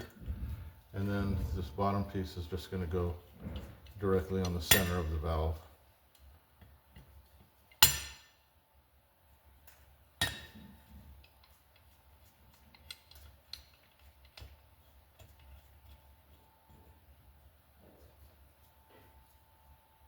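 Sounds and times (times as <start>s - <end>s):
metal tools clanking: 3.4s - 5.4s.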